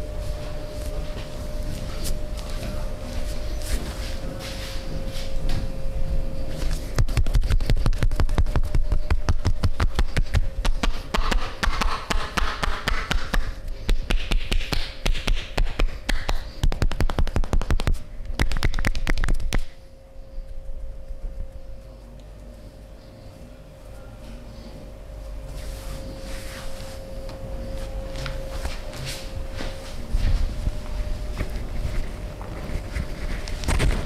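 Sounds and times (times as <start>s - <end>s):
hands striking body in massage: 9.3s - 19.7s.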